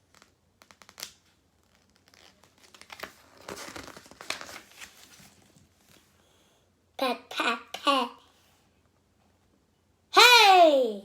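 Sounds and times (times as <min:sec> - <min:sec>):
book pages rustling: 0:00.0 - 0:06.2.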